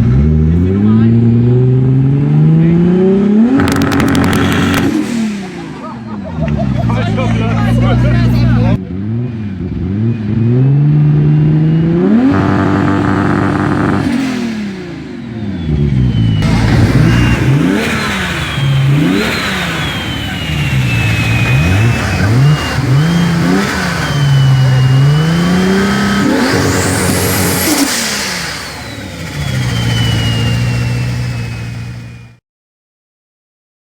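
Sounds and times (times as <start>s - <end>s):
car engine revving hard: 0.0s - 5.9s, 8.7s - 32.3s
thin high whistle: 15.4s - 32.3s.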